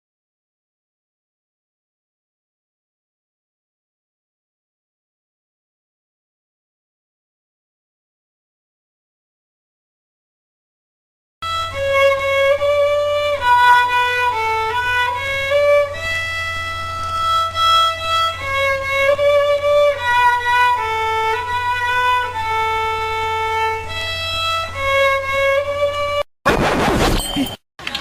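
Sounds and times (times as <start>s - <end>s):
steady low hum: 11.4s - 26.2s.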